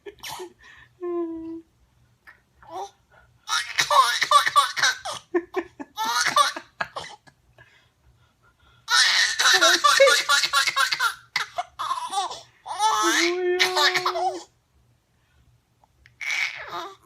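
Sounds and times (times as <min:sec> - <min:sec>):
baby laughing: 0:03.5 - 0:07.3, 0:08.9 - 0:14.5, 0:16.2 - 0:17.0.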